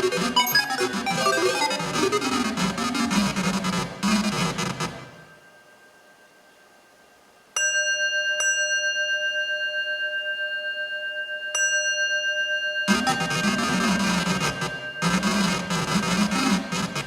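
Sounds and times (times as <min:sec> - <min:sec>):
dense electronic music: 0:00.0 - 0:05.3, 0:12.9 - 0:17.0.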